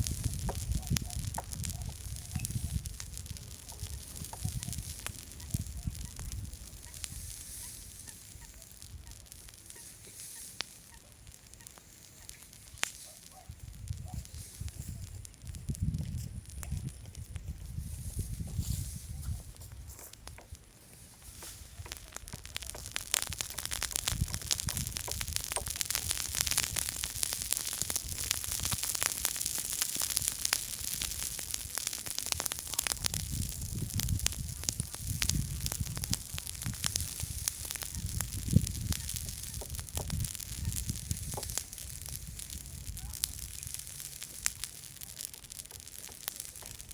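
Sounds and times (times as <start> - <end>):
campfire crackling and popping: 0.0 - 46.9
low rumbling: 30.1 - 46.8.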